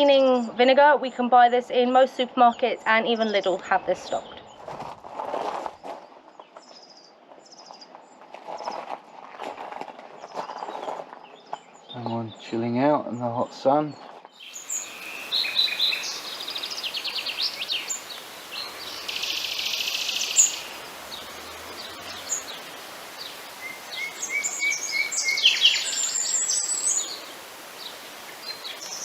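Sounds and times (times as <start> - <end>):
birds chirping and trilling: 1.4 - 4.7, 10.2 - 29.0.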